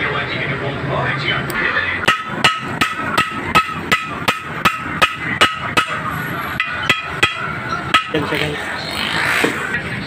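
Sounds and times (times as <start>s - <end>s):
hammer striking metal: 2.0s - 8.5s.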